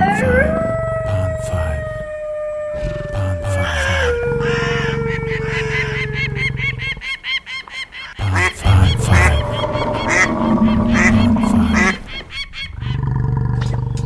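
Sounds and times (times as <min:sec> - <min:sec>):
geese honking: 0:02.9 - 0:13.0.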